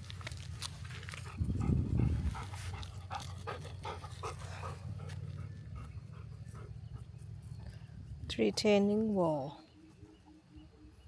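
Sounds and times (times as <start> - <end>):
steady low rumble: 0.0 - 8.9
dog panting: 1.2 - 7.3.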